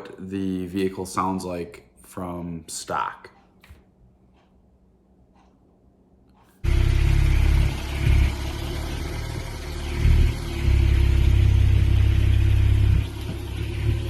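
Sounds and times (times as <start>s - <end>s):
car engine rumbling: 6.6s - 14.0s.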